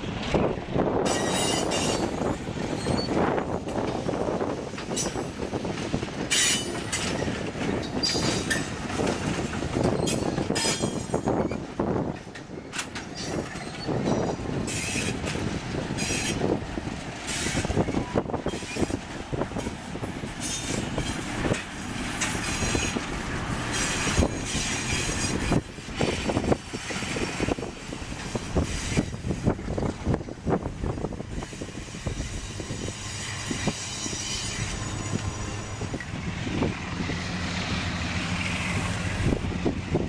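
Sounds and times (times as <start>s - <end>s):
train wheels clattering over rails: 0.0s - 40.0s
high wheel squeals: 1.0s - 3.5s, 6.3s - 9.1s, 9.7s - 11.7s, 12.6s - 15.3s, 16.0s - 16.6s, 17.3s - 19.0s, 20.4s - 29.4s, 31.3s - 36.2s.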